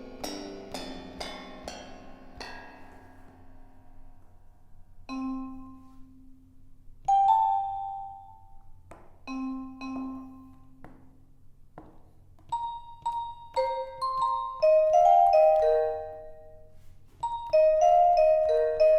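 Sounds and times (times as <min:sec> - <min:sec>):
keyboard struck notes ringing: 0:00.0 - 0:04.2, 0:12.5 - 0:18.9.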